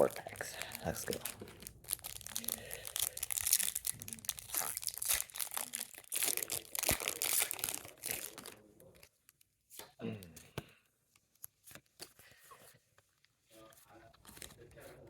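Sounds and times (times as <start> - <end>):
foil wrapper crinkling and tearing: 0.0 - 9.4.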